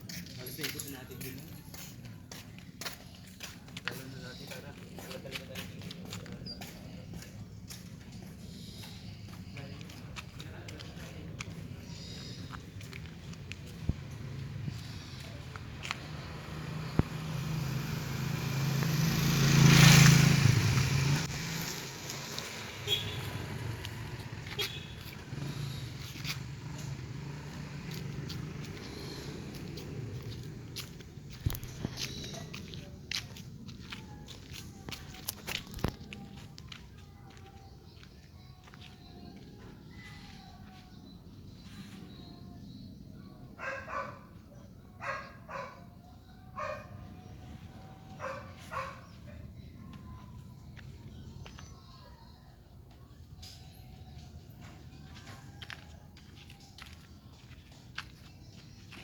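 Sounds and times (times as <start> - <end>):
motorcycle engine idling: 10.4 - 34.9
dog barking: 43.6 - 44.4, 45.0 - 45.9, 46.6 - 47.0, 48.2 - 49.4.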